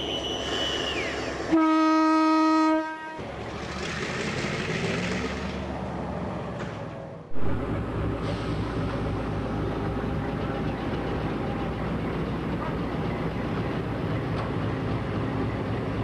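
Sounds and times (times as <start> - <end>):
train rumbling: 0.0 - 16.0
train horn blast: 1.5 - 3.2
loud engine sound: 3.2 - 12.0.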